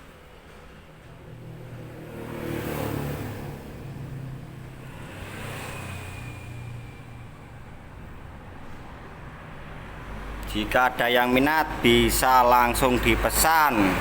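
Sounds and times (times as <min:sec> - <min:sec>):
vehicle engine passing by: 0:00.5 - 0:14.0.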